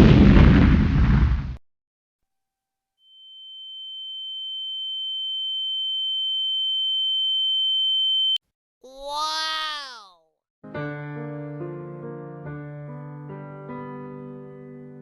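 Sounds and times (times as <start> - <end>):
high-pitched ear-ringing tone: 3.0 - 8.4.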